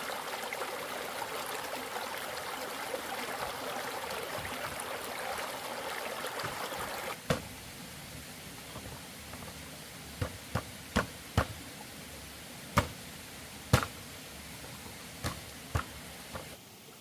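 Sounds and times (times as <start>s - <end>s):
steady hiss: 0.0s - 17.0s
hand tool chopping wood: 13.7s - 14.0s.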